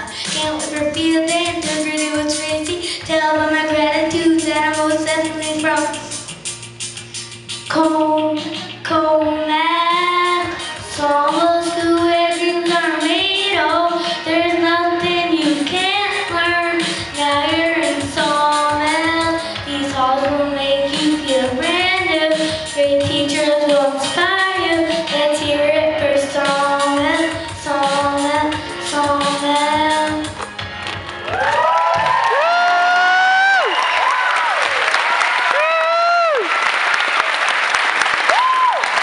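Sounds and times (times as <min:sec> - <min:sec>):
song with high sung voice: 0:00.0 - 0:30.5.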